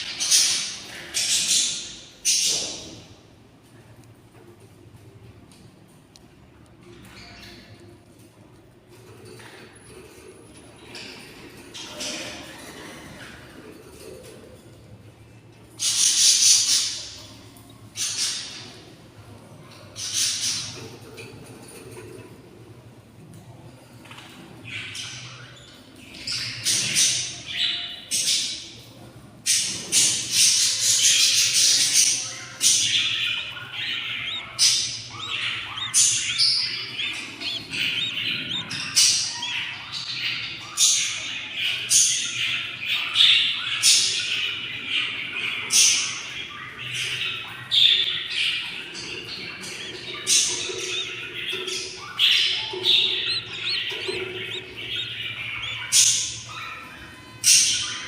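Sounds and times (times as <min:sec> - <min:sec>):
chicks raspy hissing squawks: 0:32.7 - 0:39.8, 0:49.6 - 0:57.0.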